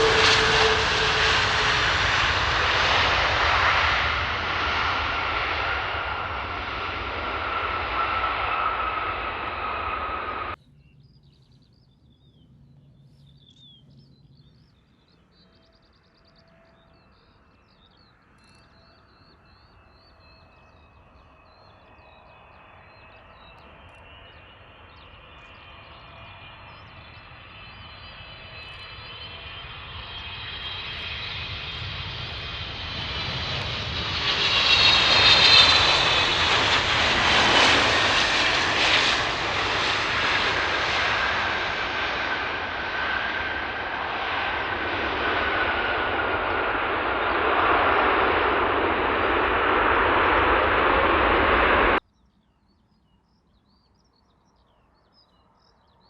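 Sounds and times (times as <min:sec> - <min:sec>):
jet airliner engine whine and rumble: 0:00.0 - 0:56.0
bird chirps: 0:09.8 - 0:33.2, 0:52.0 - 0:56.0.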